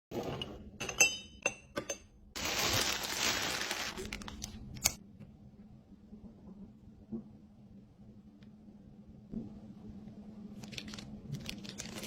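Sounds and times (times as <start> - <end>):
glass containers clinking: 0.2 - 2.2.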